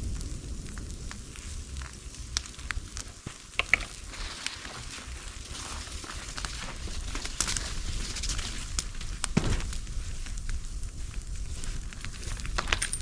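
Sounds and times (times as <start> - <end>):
bonfire crackling and popping: 0.0 - 13.0
low rumble of flames: 0.0 - 13.0
heavy thump: 9.4 - 9.7.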